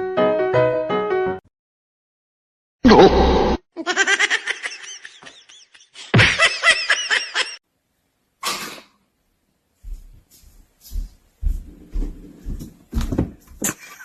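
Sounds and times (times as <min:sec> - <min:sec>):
person laughing hard: 0:03.8 - 0:07.6.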